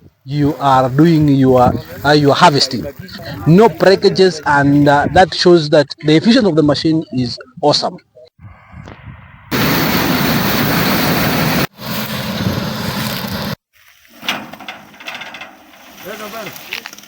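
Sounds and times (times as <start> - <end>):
combine harvester running: 9.5 - 13.6.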